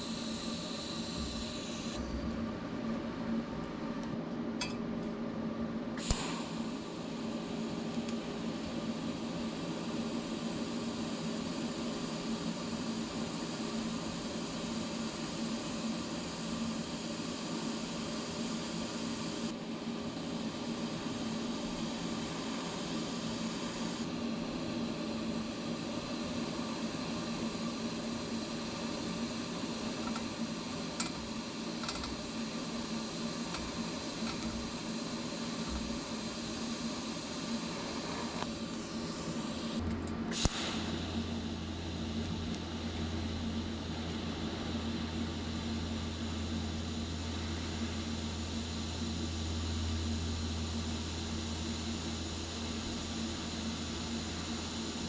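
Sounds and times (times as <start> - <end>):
welder electrical hum and hiss: 0.0 - 55.0
sharp click: 6.0 - 6.4, 40.3 - 40.9.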